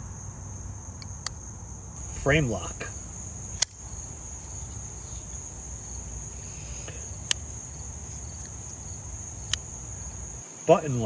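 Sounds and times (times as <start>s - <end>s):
crickets trilling: 0.0s - 11.0s
folding knife metallic clicks: 1.0s - 1.4s, 3.6s - 3.9s, 8.1s - 8.8s.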